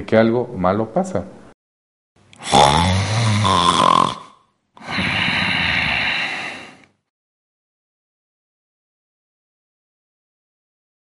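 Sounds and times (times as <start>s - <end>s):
person snoring heavily: 2.4s - 6.8s.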